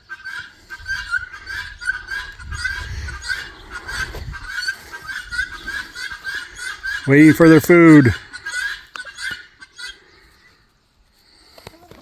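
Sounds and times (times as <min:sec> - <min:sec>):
fowl honking calls: 0:00.0 - 0:10.4
wind rumbling on microphone: 0:00.8 - 0:04.6.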